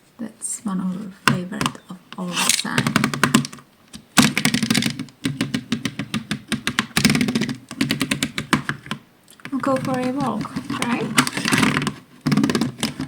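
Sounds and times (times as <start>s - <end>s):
small hard objects clicking: 4.2s - 13.0s.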